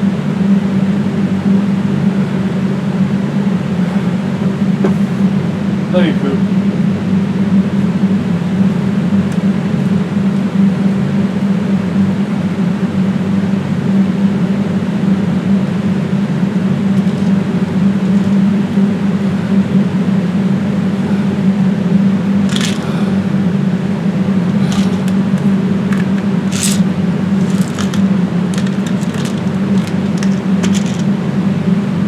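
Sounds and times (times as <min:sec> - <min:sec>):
loud mechanical hum: 0:00.0 - 0:32.0
short clicks and scuffs: 0:22.5 - 0:22.9, 0:24.6 - 0:31.1.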